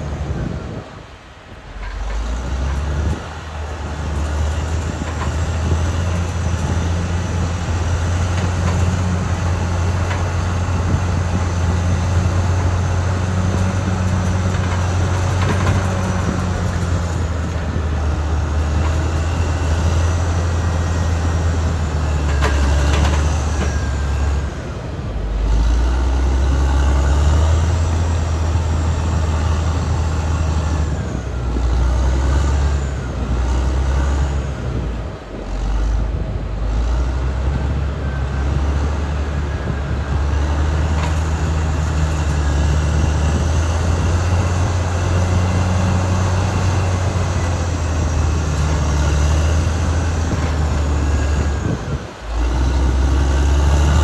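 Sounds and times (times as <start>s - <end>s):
bulldozer diesel engine under load: 0.0s - 54.0s
steel tracks clanking and squealing: 0.0s - 54.0s.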